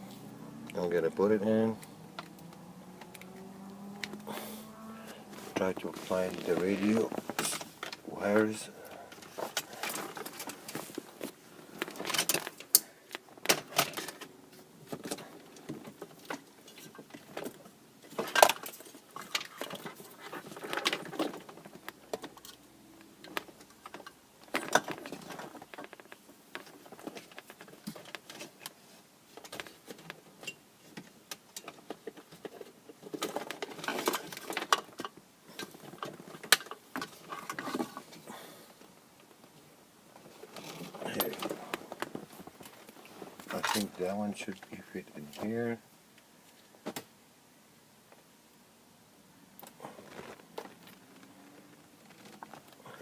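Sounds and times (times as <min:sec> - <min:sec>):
plastic parts rattling and rustling: 0:05.2 - 0:45.8, 0:49.6 - 0:53.0.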